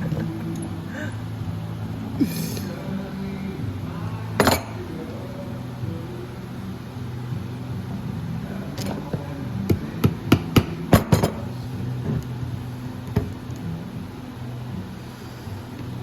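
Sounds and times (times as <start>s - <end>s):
hammer strikes: 9.7s - 11.4s.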